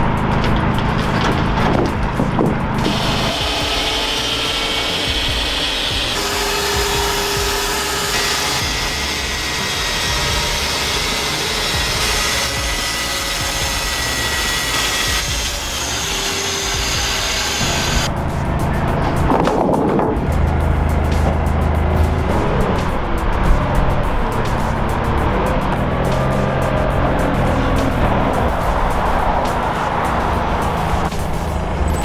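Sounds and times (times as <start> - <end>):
power saw cutting log: 2.8 - 18.1.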